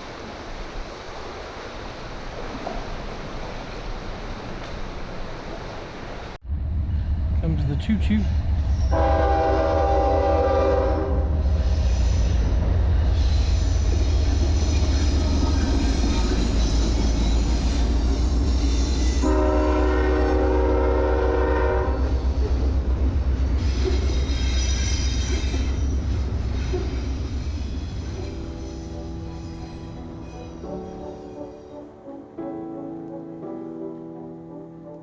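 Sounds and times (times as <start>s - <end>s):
train rumbling past: 0.0s - 35.0s
train horn blowing: 8.9s - 12.6s, 13.3s - 22.5s, 26.6s - 32.6s.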